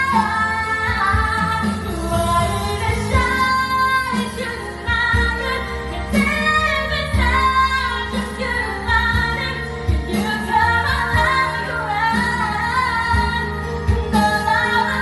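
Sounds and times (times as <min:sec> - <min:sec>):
backing music: 0:00.0 - 0:15.0
woman singing: 0:00.0 - 0:15.0.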